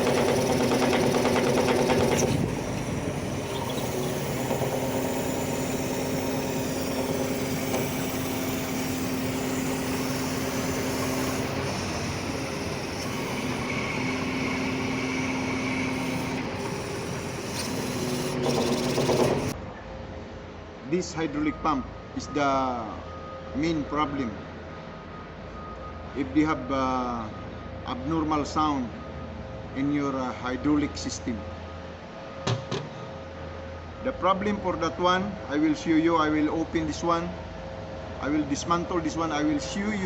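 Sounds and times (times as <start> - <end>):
hydraulic pump and engine drone: 0.0 - 20.7.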